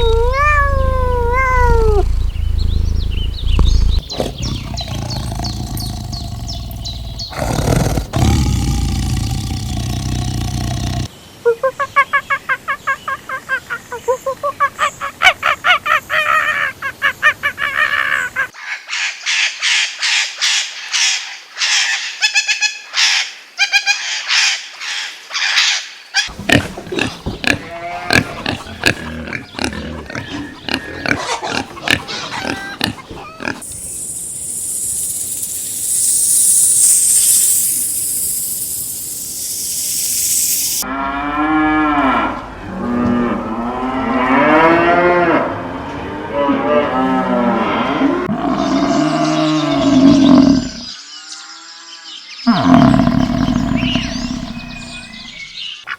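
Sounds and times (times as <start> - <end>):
farm animal squeals and calls: 0.0 - 2.1
hissing noise: 0.0 - 11.1, 33.6 - 40.8.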